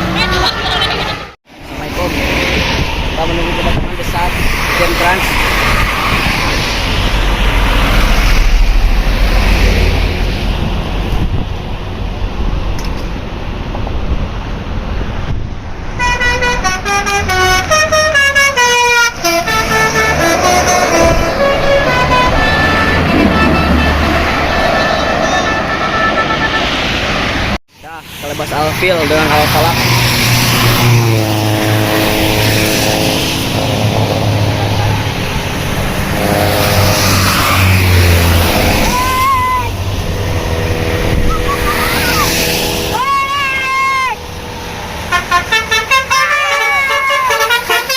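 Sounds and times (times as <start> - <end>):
bus horn playing melody: 16.0 - 26.9, 31.2 - 34.6, 35.9 - 47.9
short rising tone: 30.5 - 43.6.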